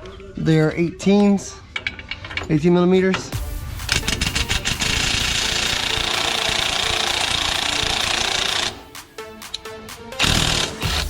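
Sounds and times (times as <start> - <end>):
background music: 0.0 - 11.0
impact wrench hammering: 3.9 - 8.8, 10.2 - 11.0.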